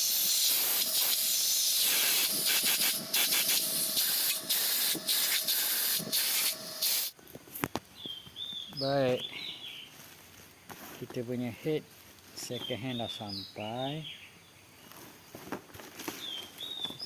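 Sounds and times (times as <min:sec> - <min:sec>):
loud hissing jet: 0:00.0 - 0:07.2.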